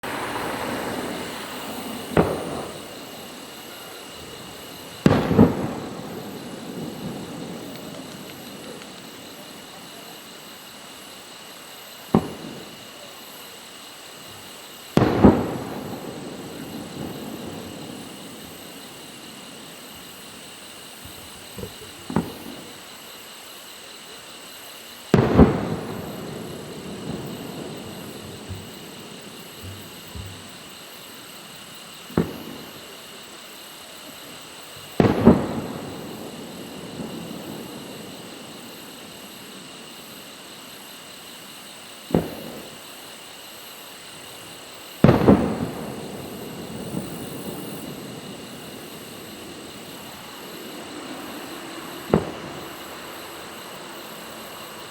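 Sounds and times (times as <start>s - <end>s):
firework boom echoing: 0.0s - 9.9s, 12.1s - 12.8s, 15.0s - 22.7s, 25.1s - 31.0s, 32.0s - 33.0s, 34.8s - 40.1s, 42.1s - 42.8s, 45.0s - 54.9s
firework launch bang: 0.0s - 10.0s, 12.0s - 13.0s, 14.3s - 22.8s, 25.1s - 33.2s, 34.7s - 40.3s, 42.1s - 43.0s, 44.9s - 54.9s.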